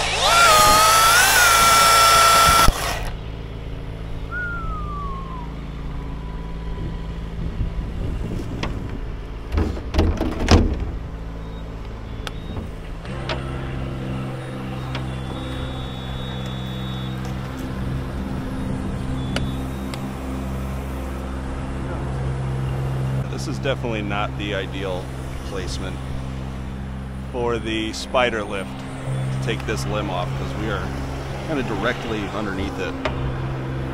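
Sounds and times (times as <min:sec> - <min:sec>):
power saw cutting: 0:00.0 - 0:03.2.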